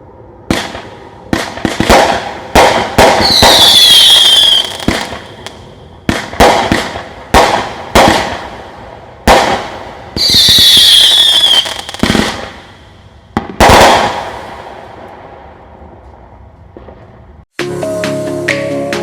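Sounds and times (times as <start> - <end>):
firework bangs: 0.4 - 17.4
shrill whistle falling in pitch: 3.2 - 4.8, 10.2 - 11.9.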